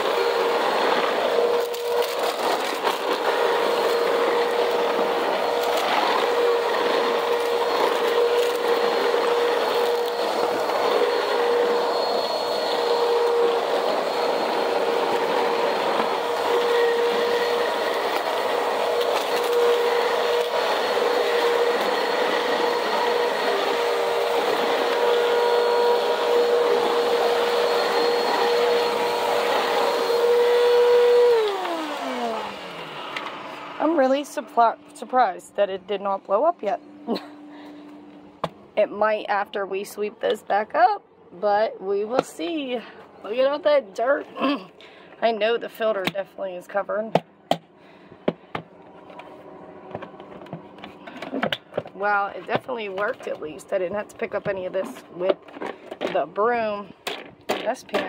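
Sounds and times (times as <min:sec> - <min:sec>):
vacuum cleaner motor: 0:00.0 - 0:38.3, 0:48.5 - 0:58.0.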